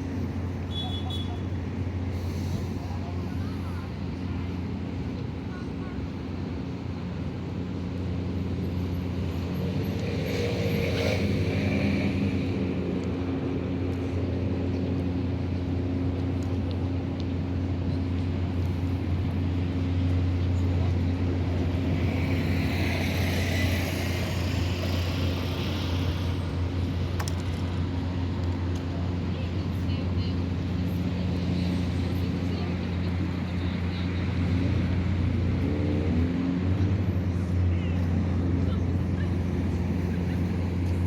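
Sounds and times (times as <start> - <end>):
low engine drone: 12.1 - 41.0.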